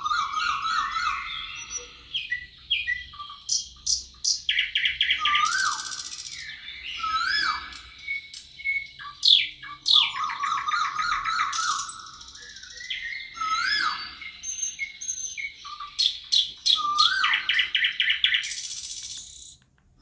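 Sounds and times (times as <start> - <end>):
forest birds singing: 0.0 - 20.0.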